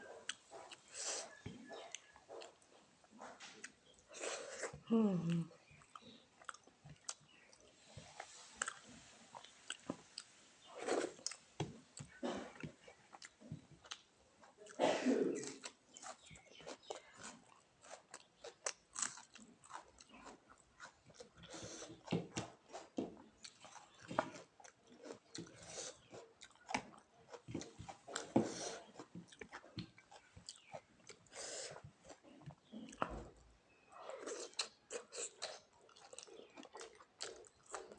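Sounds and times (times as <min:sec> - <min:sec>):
food crunching: 0:05.6 - 0:14.1, 0:15.4 - 0:31.3, 0:32.0 - 0:37.9
chewing and biting food: 0:05.6 - 0:14.8, 0:15.4 - 0:37.9.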